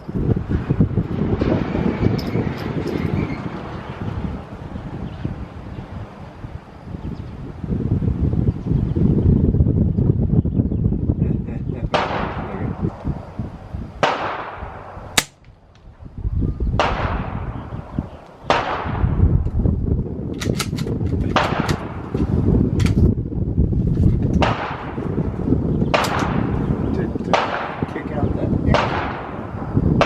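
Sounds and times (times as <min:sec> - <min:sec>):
wind rumble on microphone: 0:00.0 - 0:30.0
suppressed rifle shots: 0:14.0 - 0:15.5.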